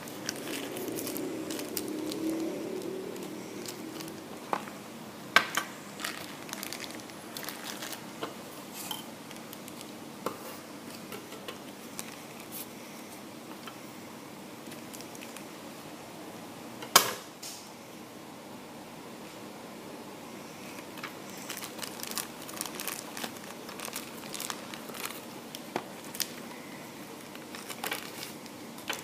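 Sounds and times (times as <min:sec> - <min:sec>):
plastic packaging crinkling: 0:00.0 - 0:04.7, 0:05.5 - 0:10.0, 0:11.7 - 0:12.7, 0:14.6 - 0:15.5, 0:20.7 - 0:29.0.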